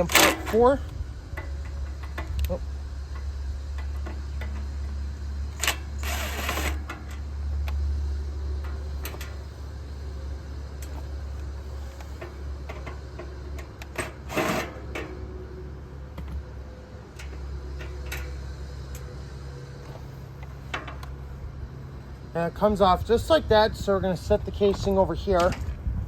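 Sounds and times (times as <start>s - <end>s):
steady low hum: 0.0s - 26.0s
scraping rasps: 8.6s - 15.2s.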